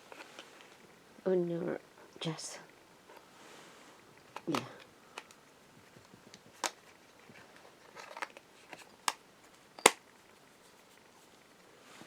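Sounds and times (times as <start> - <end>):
plastic phone clicks: 4.4 - 5.4.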